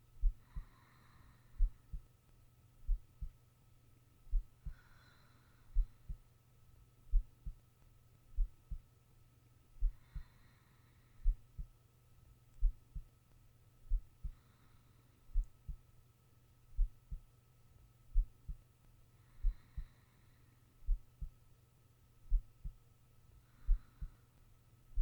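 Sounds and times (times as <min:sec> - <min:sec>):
faint steady hum: 0:00.0 - 0:25.0
heartbeat thumping: 0:00.2 - 0:00.7, 0:02.9 - 0:03.4, 0:04.3 - 0:04.8, 0:05.8 - 0:06.2, 0:07.1 - 0:07.6, 0:08.4 - 0:08.8, 0:09.8 - 0:10.2, 0:12.6 - 0:13.1, 0:13.9 - 0:14.4, 0:15.4 - 0:15.8, 0:16.8 - 0:17.2, 0:18.1 - 0:18.6, 0:20.9 - 0:21.4, 0:22.3 - 0:22.8
soft breathing: 0:00.2 - 0:02.2, 0:04.3 - 0:06.3, 0:09.8 - 0:11.8, 0:13.9 - 0:15.9, 0:18.2 - 0:21.4, 0:22.3 - 0:25.0.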